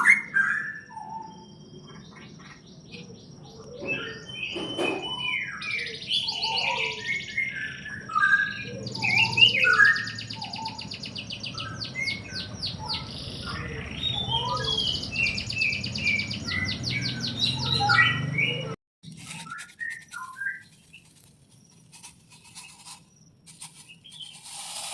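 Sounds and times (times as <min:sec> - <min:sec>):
small birds chirping: 0:00.0 - 0:24.9.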